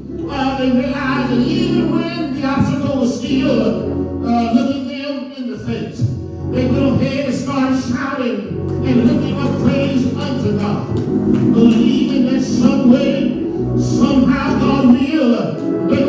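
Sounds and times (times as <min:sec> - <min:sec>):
gospel choir singing: 0:00.0 - 0:05.0, 0:08.5 - 0:16.0
music accompaniment: 0:00.0 - 0:16.0.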